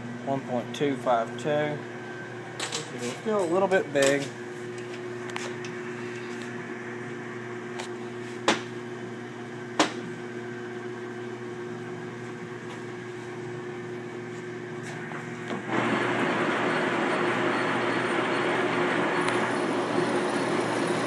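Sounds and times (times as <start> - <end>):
lathe motor humming: 15.6 - 21.0.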